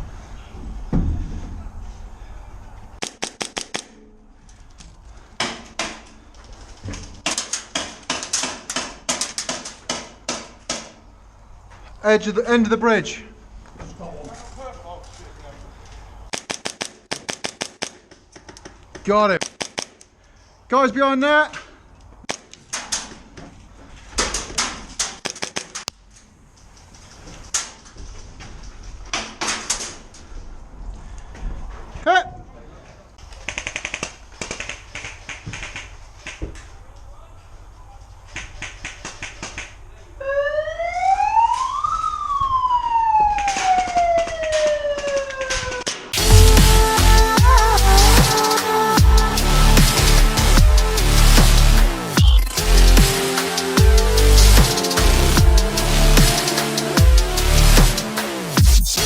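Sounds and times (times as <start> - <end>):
airsoft guns firing: 3.0 - 4.1, 7.2 - 11.0, 16.3 - 18.6, 19.4 - 20.1, 24.2 - 25.9, 33.4 - 36.4.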